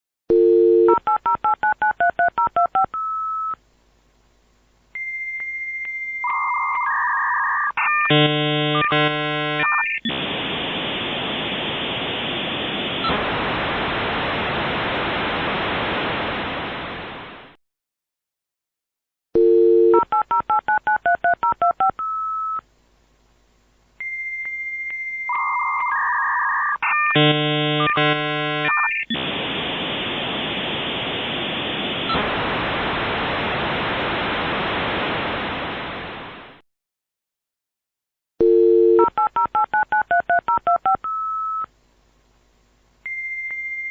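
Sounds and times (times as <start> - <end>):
dial tone: 0.3 - 3.6, 5.0 - 9.9, 19.4 - 22.6, 24.0 - 28.9, 38.4 - 41.7, 43.1 - 43.9
touch-tone dialing beeps: 0.3 - 3.6, 19.4 - 22.6, 38.4 - 41.7
warbling modem handshake tones: 5.0 - 13.3, 24.0 - 32.2
modem noise hiss: 6.3 - 17.6, 21.4 - 36.6.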